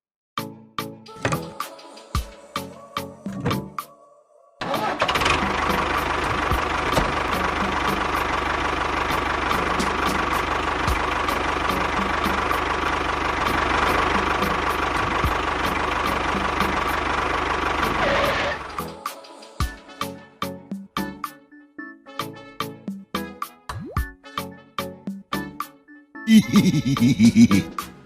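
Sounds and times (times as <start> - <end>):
machine engine running: 4.7 - 18.8.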